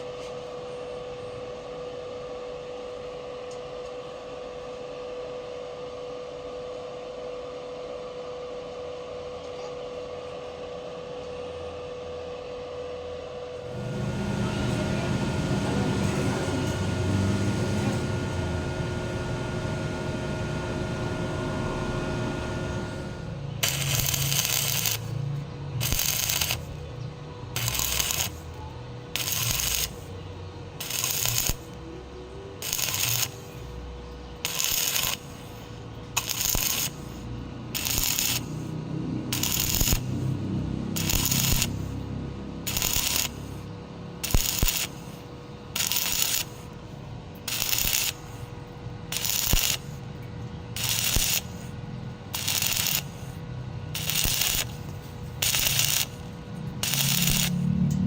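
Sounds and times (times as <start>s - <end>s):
steady hissing noise: 13.6s - 23.4s
welding arc hissing bursts: 13.6s - 25.1s, 25.8s - 26.7s, 27.6s - 28.4s, 29.2s - 30.0s, 30.8s - 31.7s, 32.6s - 33.5s, 34.4s - 35.6s, 36.2s - 40.4s, 41.0s - 42.0s, 42.7s - 46.7s, 47.5s - 48.5s, 49.1s - 50.0s, 50.8s - 53.4s, 54.0s - 57.7s.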